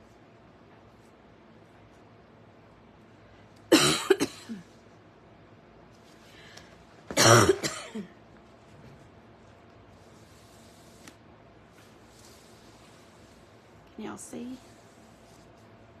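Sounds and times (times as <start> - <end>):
woman coughing: 3.7 - 4.7, 7.1 - 8.2.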